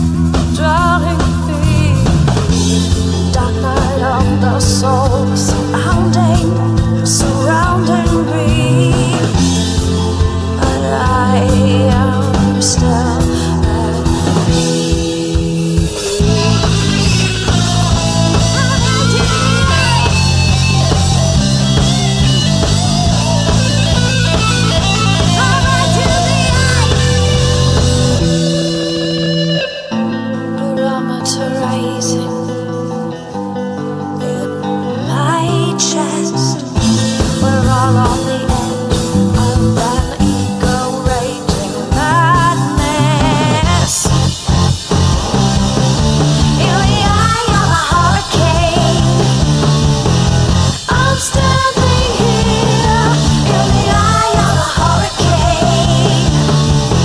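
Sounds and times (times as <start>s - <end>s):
steady bass line: 0.0s - 29.8s, 36.7s - 57.0s
drums: 0.0s - 57.0s
guitar-like lead with sliding notes: 0.0s - 57.0s.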